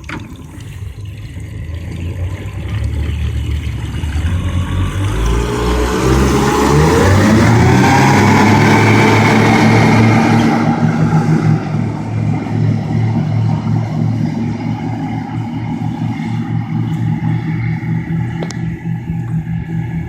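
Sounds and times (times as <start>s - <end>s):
outboard engines drone: 0.0s - 20.0s
loud rushing noise: 4.8s - 20.0s.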